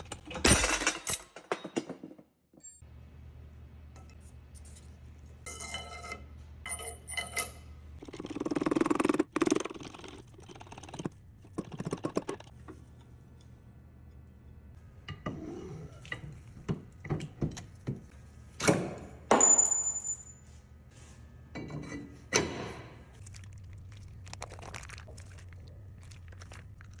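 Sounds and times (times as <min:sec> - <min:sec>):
metal tools clinking and knocking: 0:00.0 - 0:02.8, 0:05.4 - 0:07.7.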